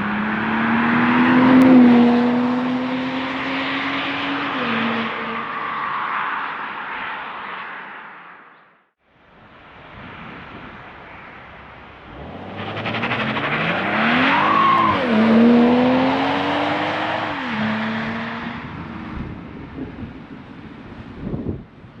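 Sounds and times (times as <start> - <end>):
car engine accelerating past: 0.0 - 5.4, 12.1 - 18.8.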